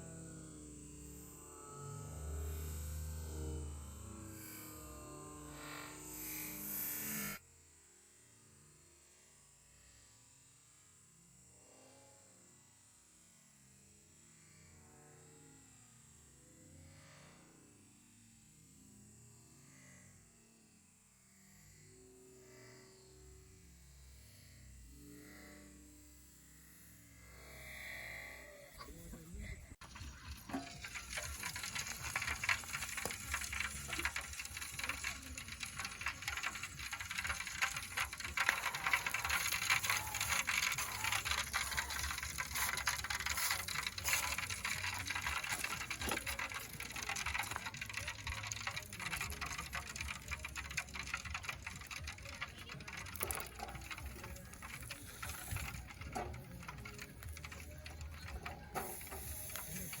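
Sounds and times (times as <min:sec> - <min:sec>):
food sizzling on a grill: 0:29.8 - 1:00.0.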